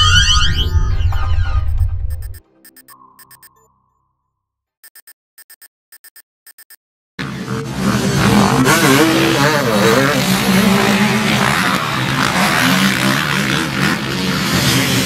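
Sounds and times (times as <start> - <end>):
motorcycle engines revving: 7.2 - 15.0.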